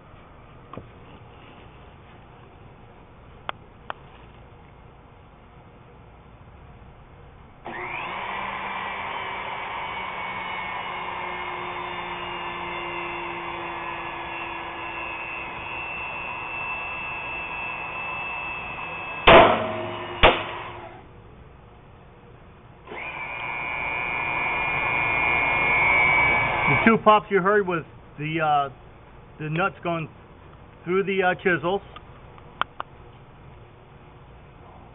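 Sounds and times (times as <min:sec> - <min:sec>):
hydraulic pump running: 0:07.6 - 0:21.0, 0:22.9 - 0:27.1.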